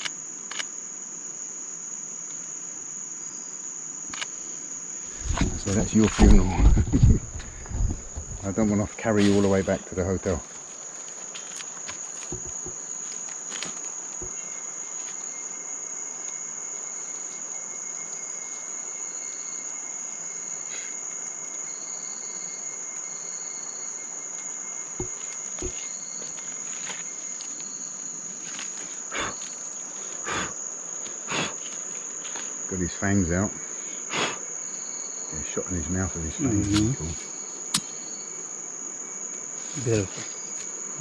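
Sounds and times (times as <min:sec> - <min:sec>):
insect calls: 0:00.0 - 0:41.0
insect high-pitched trill: 0:00.0 - 0:41.0
soft knocks: 0:12.3 - 0:12.8, 0:25.0 - 0:25.8.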